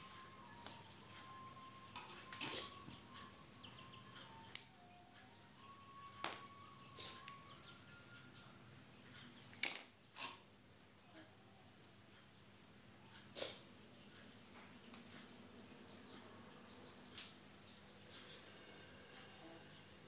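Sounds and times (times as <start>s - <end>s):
faint wavering thin tone: 18.3s - 20.0s.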